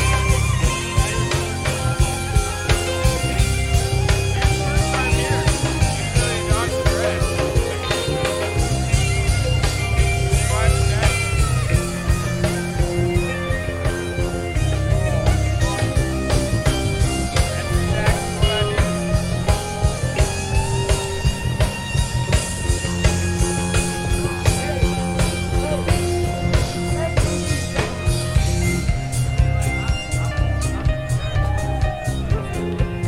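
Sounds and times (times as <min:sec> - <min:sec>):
drum kit steady beat: 0:00.0 - 0:33.0
electric guitar bending notes: 0:00.0 - 0:33.0
heavy bass: 0:00.0 - 0:33.0.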